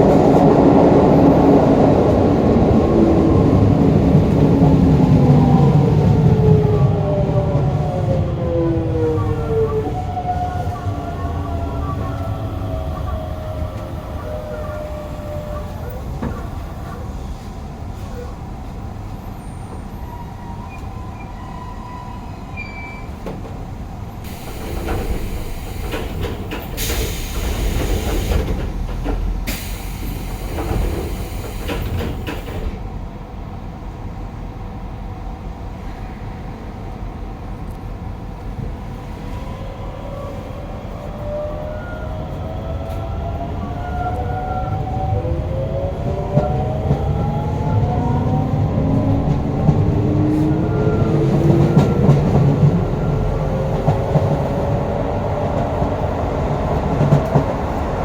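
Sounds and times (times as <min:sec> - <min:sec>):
train interior rumble: 0:00.0 - 0:58.0
loud hiss: 0:24.3 - 0:28.6, 0:29.5 - 0:32.5.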